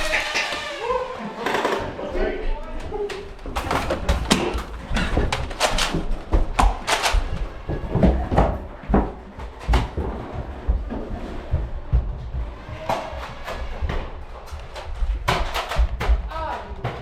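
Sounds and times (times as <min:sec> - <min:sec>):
sharp clacks and knocks: 0:03.2 - 0:17.0
low rumble of movement: 0:07.2 - 0:16.3.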